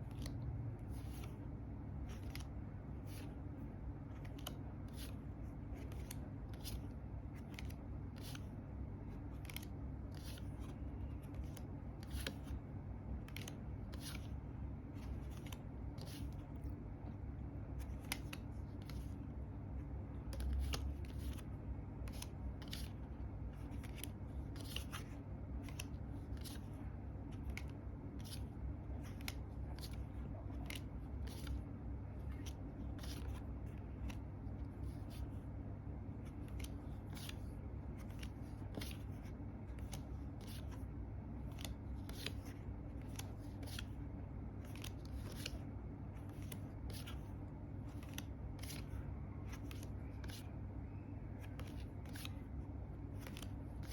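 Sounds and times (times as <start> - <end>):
steady low hum: 0.0 - 53.9
paper cards snapping: 9.3 - 12.6, 53.2 - 53.9.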